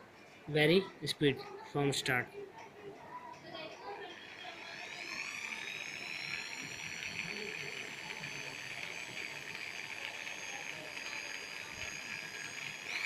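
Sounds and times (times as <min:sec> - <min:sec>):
electric drill motor whine: 0:03.9 - 0:13.0.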